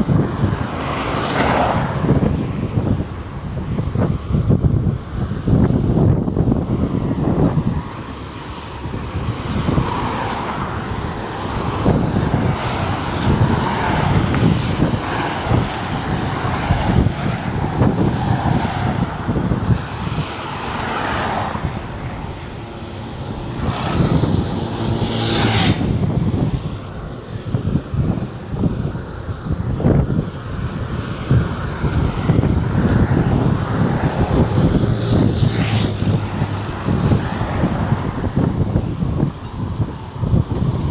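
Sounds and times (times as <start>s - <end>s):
highway traffic: 0.0s - 40.9s
vehicle passing whoosh: 0.0s - 40.9s
wind buffeting microphone: 0.0s - 40.9s.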